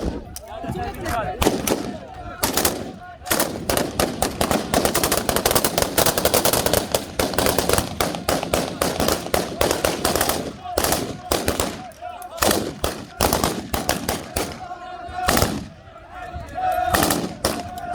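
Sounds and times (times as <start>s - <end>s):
men shouting: 0.1s - 4.4s, 8.2s - 17.9s
rapid gunfire rattle: 1.4s - 14.6s
gunshots: 1.4s - 15.8s, 16.9s - 17.9s.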